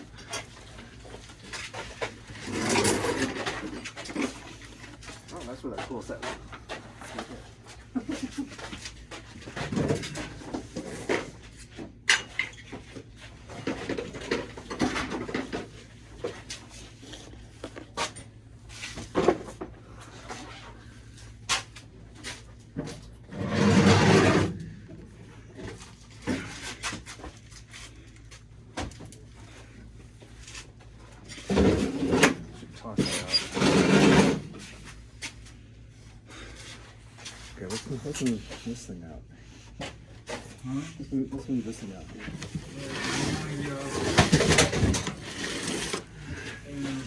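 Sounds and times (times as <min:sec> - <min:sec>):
household items clattering: 0:42.2 - 0:47.0
rushing scraping noise: 0:42.6 - 0:46.1.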